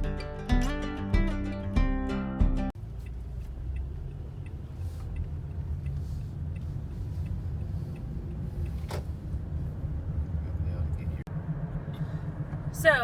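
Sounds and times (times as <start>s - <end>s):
guitar music: 0.0s - 2.7s
car road rumble inside cabin: 2.7s - 13.0s
faint light ticks: 2.9s - 9.1s.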